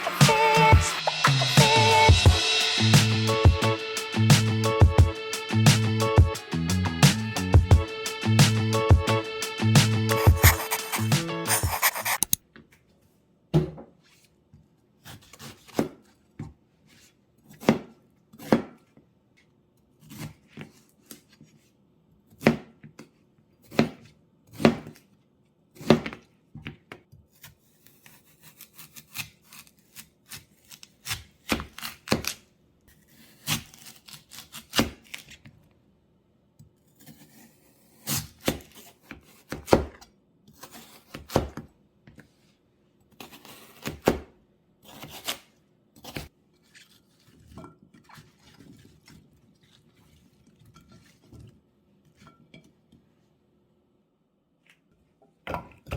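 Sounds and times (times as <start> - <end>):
knife scraping on board: 10.1 - 12.4
knife chopping on cutting board: 10.2 - 12.3, 17.5 - 18.8, 38.0 - 40.0, 40.6 - 41.6, 43.2 - 44.3.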